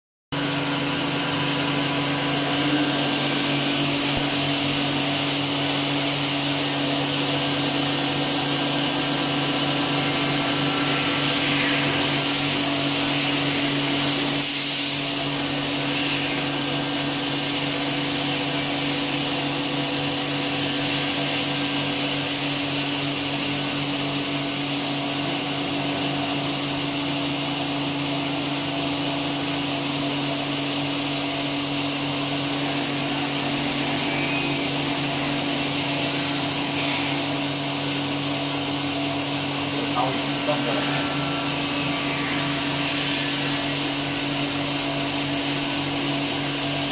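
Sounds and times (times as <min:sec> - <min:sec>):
machine motor hum and whine: 0:00.4 - 0:46.9.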